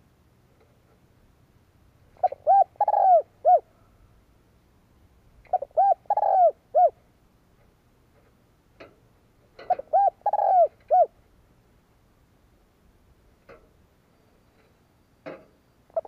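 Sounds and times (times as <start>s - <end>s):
dove cooing: 2.2s - 4.0s, 5.5s - 7.0s, 9.6s - 11.2s.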